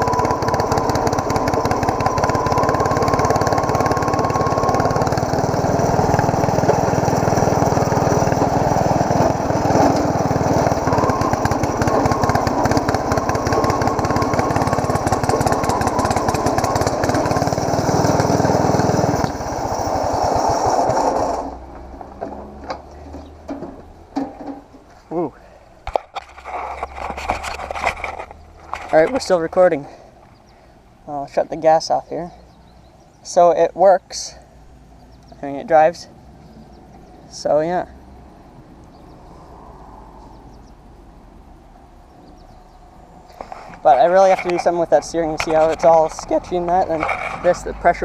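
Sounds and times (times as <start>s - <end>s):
lawn tractor engine running: 0.0s - 24.8s, 25.8s - 30.5s, 43.3s - 48.0s.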